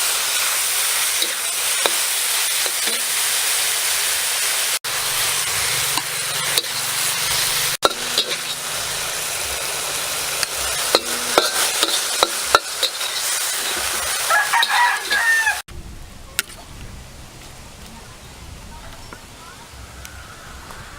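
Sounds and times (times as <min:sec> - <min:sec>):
meat and vegetables sizzling: 0:00.0 - 0:15.7
clinks of stirring: 0:10.9 - 0:15.3
rooster crowing: 0:14.0 - 0:15.7.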